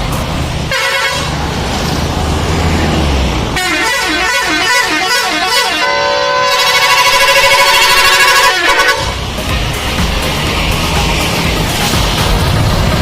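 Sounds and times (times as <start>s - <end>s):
bus engine and road noise: 0.0s - 13.0s
bus horn playing melody: 0.7s - 1.4s, 3.5s - 9.4s.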